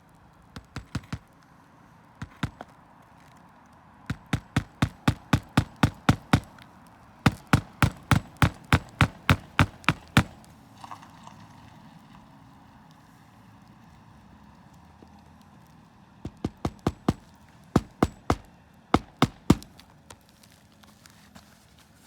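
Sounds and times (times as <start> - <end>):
hammer driving nails: 0.6 - 1.3, 2.2 - 2.7, 4.1 - 6.6, 7.2 - 10.5, 16.3 - 19.8.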